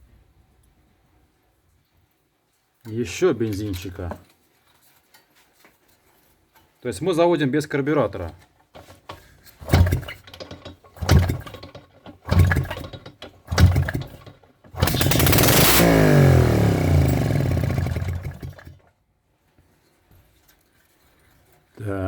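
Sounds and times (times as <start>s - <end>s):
small engine turning over: 9.6s - 18.8s
two-stroke engine running: 9.7s - 10.2s, 11.0s - 18.8s.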